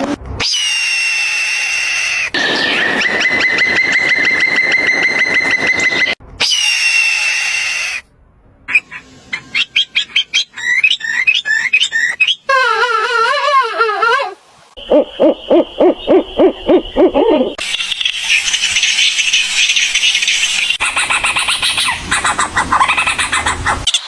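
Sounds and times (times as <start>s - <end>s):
high pulsing animal call: 0.4s - 8.1s, 8.7s - 17.6s
animal chirps: 1.7s - 8.0s, 8.7s - 13.6s, 14.8s - 24.0s
wavering animal call: 8.7s - 17.6s.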